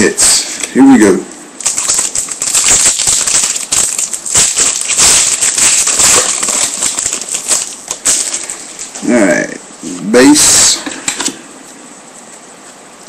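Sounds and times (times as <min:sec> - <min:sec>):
packaging crinkling and tearing: 0:01.6 - 0:09.0.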